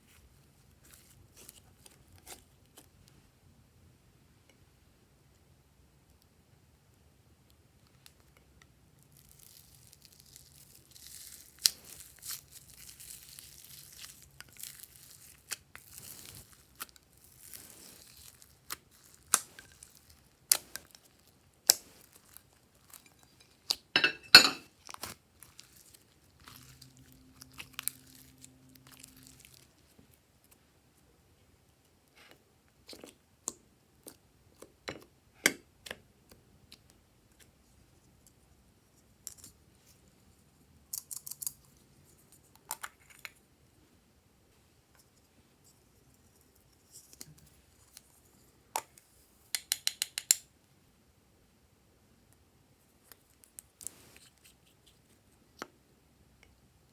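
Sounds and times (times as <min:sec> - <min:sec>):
packaging crinkling and tearing: 0:09.1 - 0:23.8, 0:24.8 - 0:29.9
sharp clicks and taps: 0:49.6 - 0:50.4.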